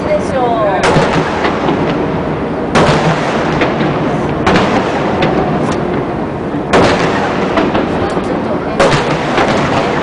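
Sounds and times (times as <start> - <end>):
steady low rumble: 0.0 - 10.0
firework booms with echo: 0.8 - 10.0
firework cracks: 0.8 - 10.0.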